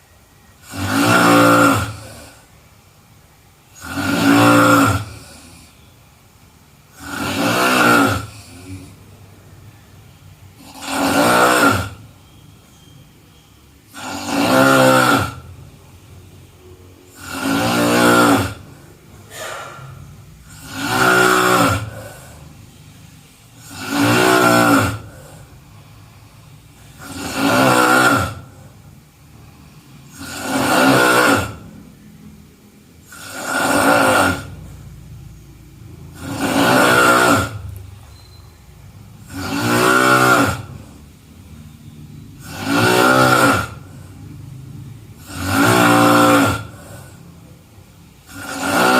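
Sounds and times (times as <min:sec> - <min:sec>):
person snoring: 0:00.6 - 0:02.5, 0:03.7 - 0:05.9, 0:06.9 - 0:09.2, 0:10.5 - 0:12.1, 0:13.9 - 0:15.6, 0:17.0 - 0:23.0, 0:23.6 - 0:32.0, 0:33.0 - 0:35.0, 0:35.9 - 0:37.8, 0:39.2 - 0:41.0, 0:42.4 - 0:47.5, 0:48.2 - 0:48.9
quiet breathing: 0:15.4 - 0:27.7, 0:46.6 - 0:48.6
faint breath: 0:18.7 - 0:20.6, 0:21.8 - 0:23.7, 0:25.0 - 0:27.0.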